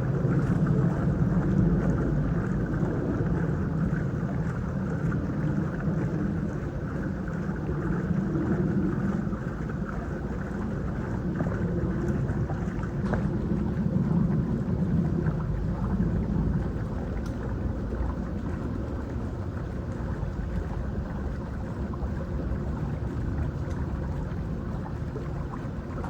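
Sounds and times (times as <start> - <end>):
motor running steadily: 0.0 - 26.0.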